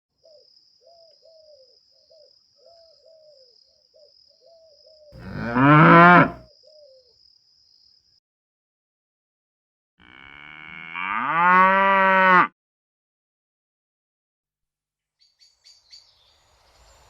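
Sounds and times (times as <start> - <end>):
cow mooing: 5.2 - 6.4, 10.0 - 12.5.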